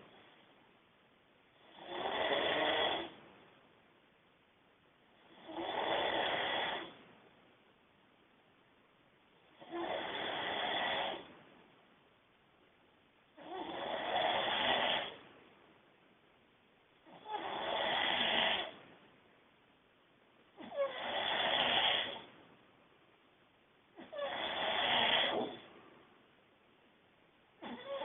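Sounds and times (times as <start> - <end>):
quiet breaths: 0.0 - 3.7, 5.0 - 7.4, 9.2 - 11.8, 13.2 - 15.7, 20.0 - 28.0
man snoring loudly: 1.6 - 3.1, 5.3 - 6.9, 9.6 - 11.2, 13.4 - 15.2, 17.2 - 18.7, 20.7 - 22.2, 24.1 - 25.6.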